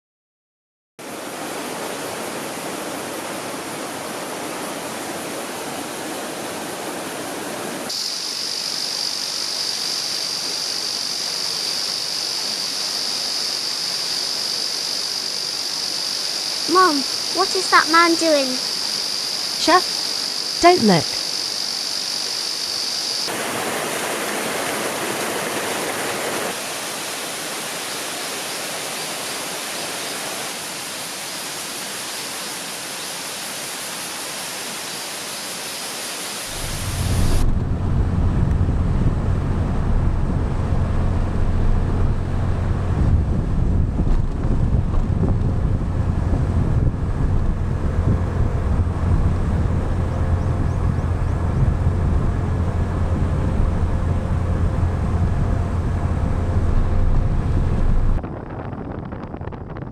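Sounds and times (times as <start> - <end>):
stream water rushing: 1.0 - 58.2
scooter engine hum: 36.5 - 58.2
wind rumbling on microphone: 36.5 - 59.9.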